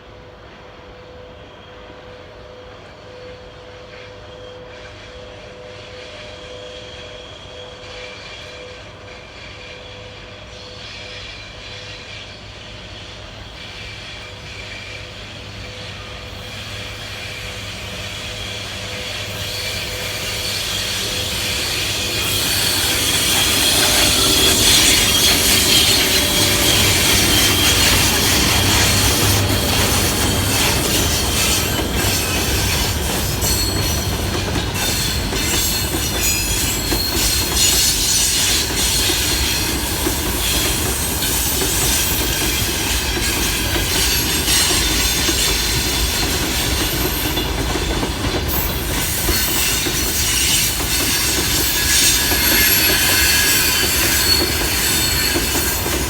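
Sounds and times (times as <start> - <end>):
train wheels rumbling on rails: 0.0 - 56.0
high-pitched wheel squeal: 13.6 - 47.5, 48.5 - 56.0.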